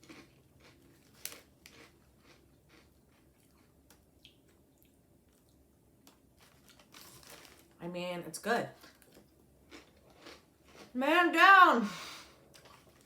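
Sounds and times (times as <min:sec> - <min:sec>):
crunching crispy snacks: 0:00.0 - 0:03.7, 0:06.1 - 0:07.8, 0:08.8 - 0:10.9.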